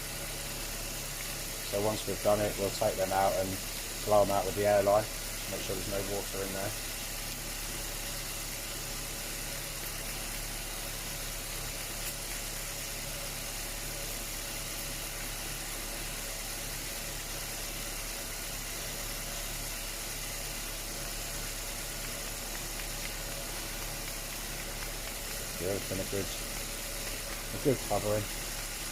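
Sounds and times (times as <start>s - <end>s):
car engine idling: 0.0s - 28.9s
steady hiss: 0.0s - 28.9s.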